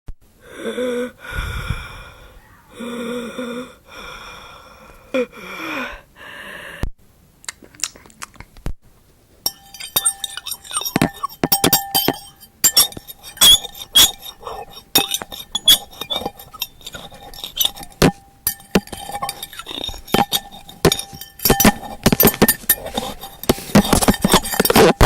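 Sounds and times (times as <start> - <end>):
clicks and clinks: 9.5 - 25.0.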